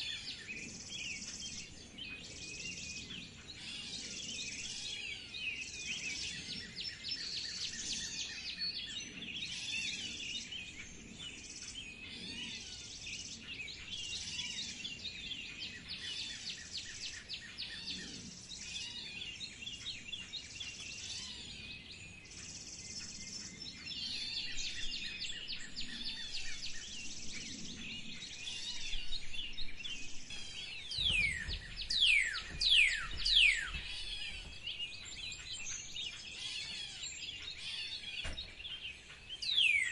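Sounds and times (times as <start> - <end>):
songbirds chirping: 0.0 - 39.9
falling whistled bird calls: 28.3 - 39.9.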